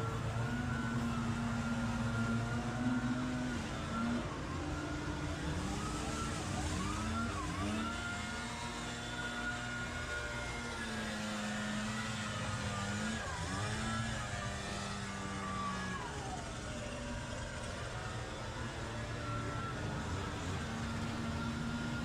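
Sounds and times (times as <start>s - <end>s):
lawn equipment engine running: 0.0s - 22.0s.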